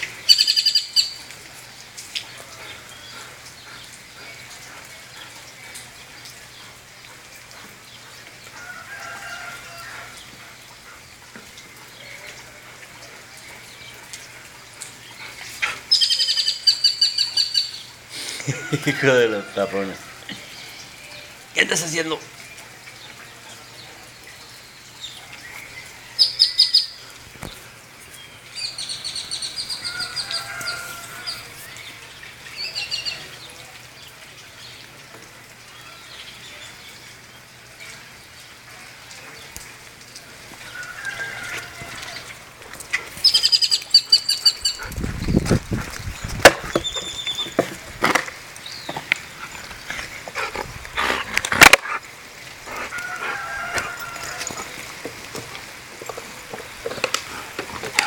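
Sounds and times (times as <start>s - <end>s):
small birds chirping: 20.3s - 34.9s, 41.6s - 48.0s.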